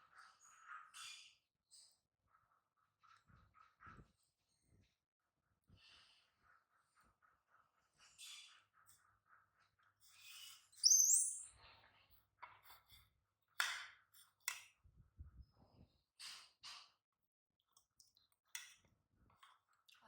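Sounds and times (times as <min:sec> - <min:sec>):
baby monkey squeaking: 0:10.8 - 0:11.5.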